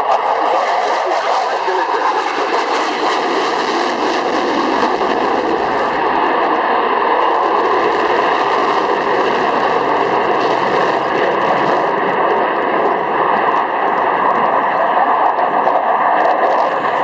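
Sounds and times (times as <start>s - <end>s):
helicopter turbine and rotor noise: 0.0s - 17.0s
steady whining tones: 0.0s - 17.0s.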